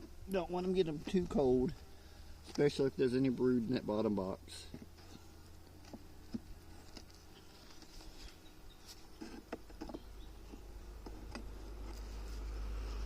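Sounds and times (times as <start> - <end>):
wooden beehive frames clicking: 4.7 - 12.0.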